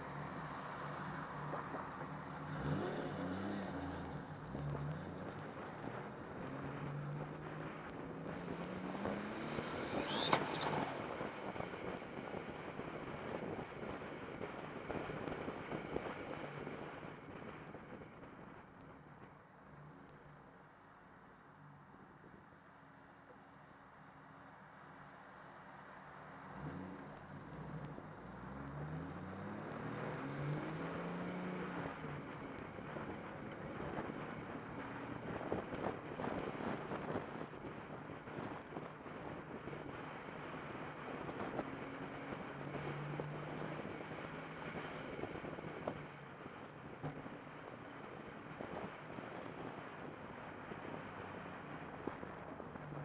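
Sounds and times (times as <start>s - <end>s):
car engine revving: 0.0s - 11.4s, 26.5s - 36.6s
road and wind noise: 0.0s - 53.0s.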